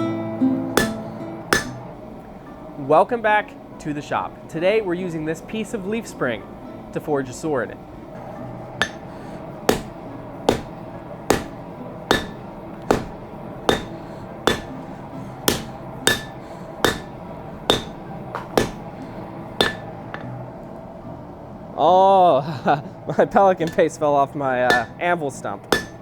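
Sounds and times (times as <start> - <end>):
hammer blows on anvil: 0.7 - 2.0, 8.2 - 20.4, 23.6 - 26.0.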